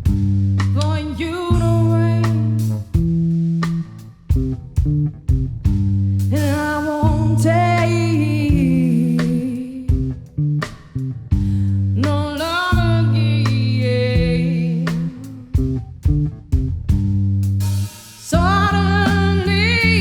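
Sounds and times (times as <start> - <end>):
person singing: 6.4 - 10.0, 18.3 - 20.0.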